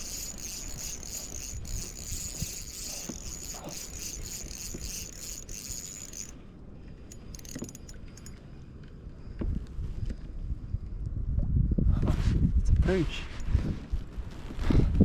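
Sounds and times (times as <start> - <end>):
high insect buzz: 0.0 - 6.3
fishing gear clicks and rattles: 0.0 - 8.5
wind buffeting microphone: 9.1 - 15.0.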